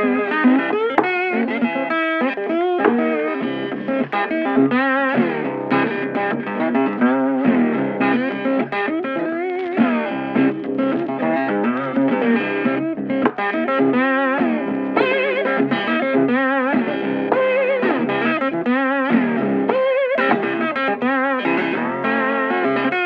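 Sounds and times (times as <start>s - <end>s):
electric guitar music: 0.0s - 23.0s.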